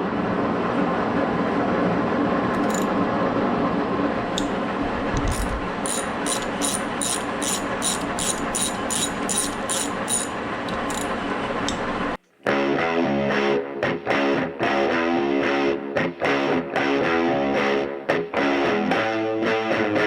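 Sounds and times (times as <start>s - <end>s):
loud mechanical whir: 4.1s - 12.2s
ratchet clicks: 5.2s - 11.8s.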